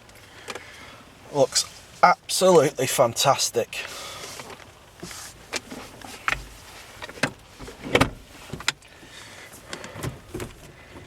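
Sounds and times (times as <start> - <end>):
gear lever clicks and clunks: 5.5 - 8.9.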